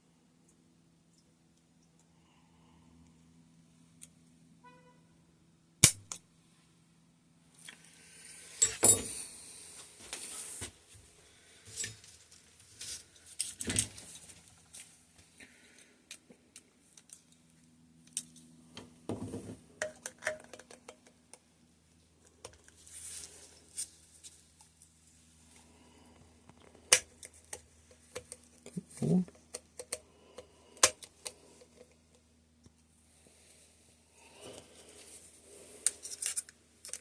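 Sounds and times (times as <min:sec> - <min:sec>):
metal parts and tools clinking: 0:08.6 - 0:09.2.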